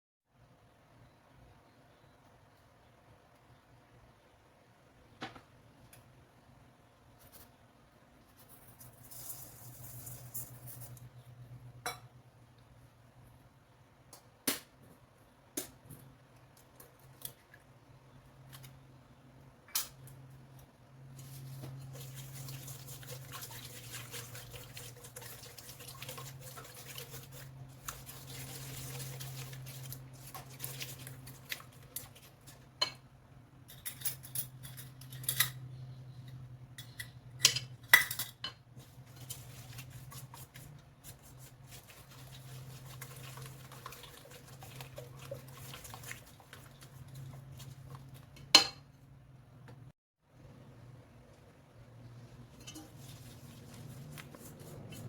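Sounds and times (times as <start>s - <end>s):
utensils and dishes clinking: 33.6s - 35.7s, 52.5s - 53.1s.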